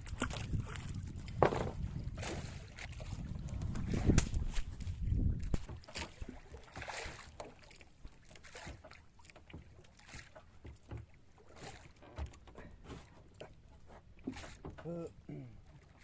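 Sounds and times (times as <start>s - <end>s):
gear knocking in wooden boat: 1.3s - 2.2s, 5.3s - 7.2s.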